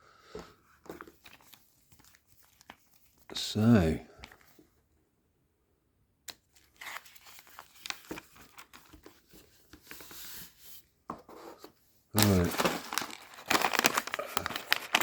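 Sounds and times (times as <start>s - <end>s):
plastic bag crinkling and tearing: 6.5s - 9.0s, 12.2s - 15.0s.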